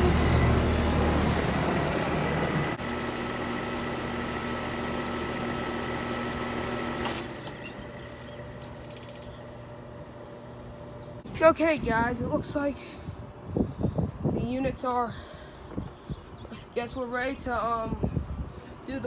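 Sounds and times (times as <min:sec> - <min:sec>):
compressor hum: 0:00.0 - 0:14.4
condenser fan rushing: 0:00.0 - 0:14.5.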